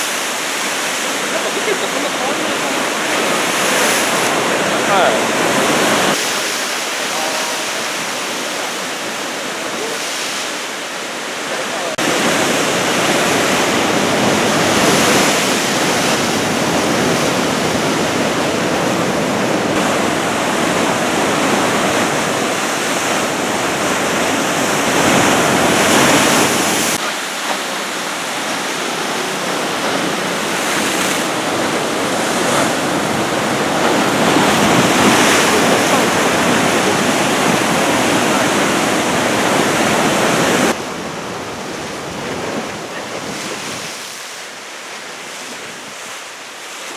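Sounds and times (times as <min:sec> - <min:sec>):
storm waves breaking: 0:00.0 - 0:46.9
wind on microphone: 0:12.0 - 0:44.2.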